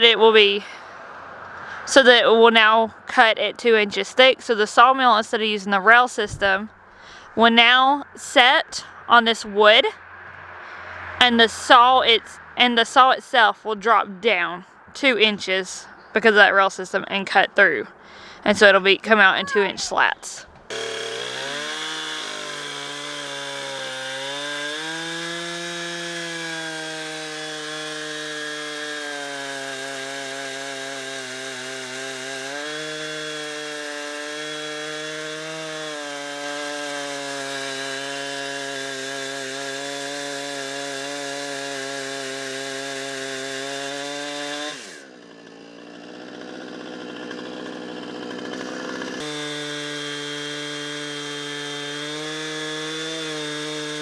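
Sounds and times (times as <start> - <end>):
chainsaw cutting log: 18.4 - 54.0.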